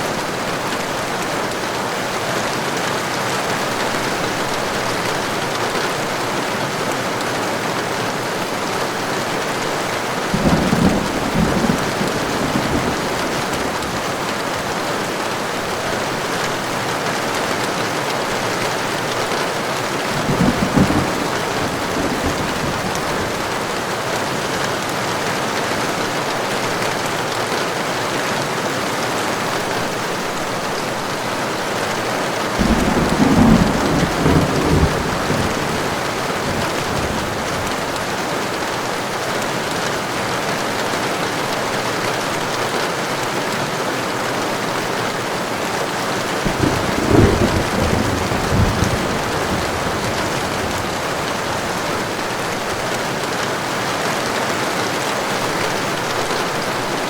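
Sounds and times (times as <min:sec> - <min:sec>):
heavy rain: 0:00.0 - 0:57.0
distant thunder rumbles: 0:10.2 - 0:14.7, 0:20.1 - 0:23.7, 0:32.6 - 0:38.0, 0:46.4 - 0:52.9.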